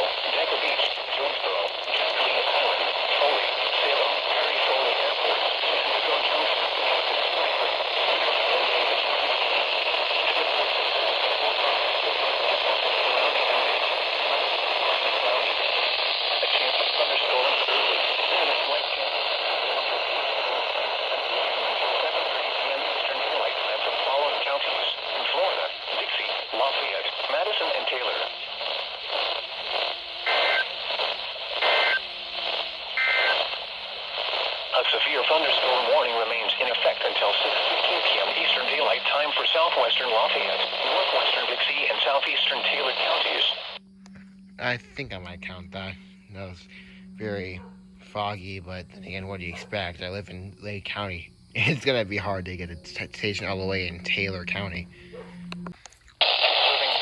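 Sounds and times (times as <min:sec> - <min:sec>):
radio static hiss: 0:00.0 - 0:57.0
warbling data tones: 0:43.8 - 0:55.8.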